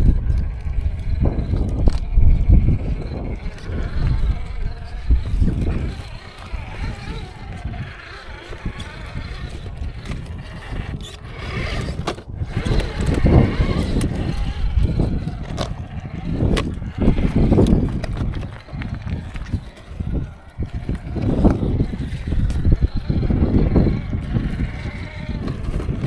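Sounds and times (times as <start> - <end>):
toy car motor and gears whirring: 0.0 - 26.0
tyres scrabbling on rock: 0.0 - 26.0.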